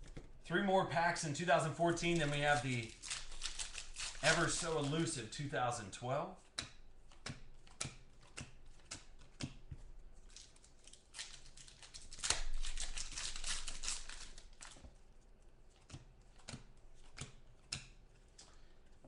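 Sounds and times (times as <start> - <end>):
cards clicking and tapping: 2.0 - 5.2, 6.5 - 10.6, 15.8 - 18.0
card pack wrapper ripping: 2.0 - 5.3, 10.3 - 14.8.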